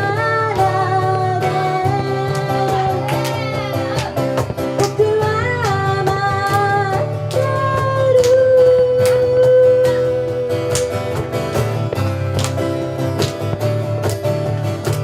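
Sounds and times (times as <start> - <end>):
person singing: 0.0 - 10.8
strummed acoustic guitar: 0.0 - 15.0.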